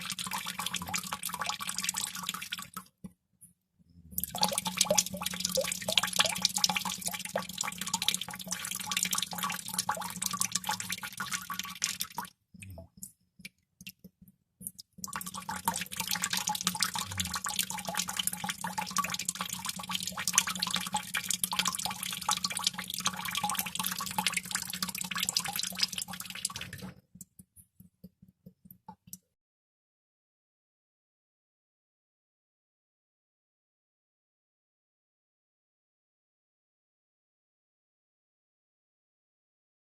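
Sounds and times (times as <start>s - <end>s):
water droplets dripping into water: 0.0s - 3.2s, 4.2s - 29.2s.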